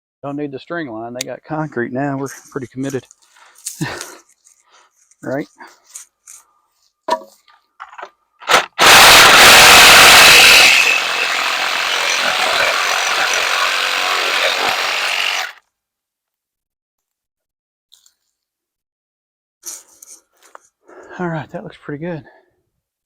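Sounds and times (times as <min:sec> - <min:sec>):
power saw cutting wood: 0:08.4 - 0:15.6.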